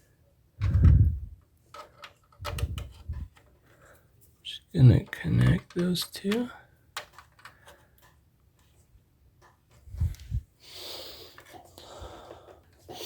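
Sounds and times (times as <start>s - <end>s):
small clicks of cables: 5.1s - 8.7s
breathy hiss: 10.6s - 13.0s.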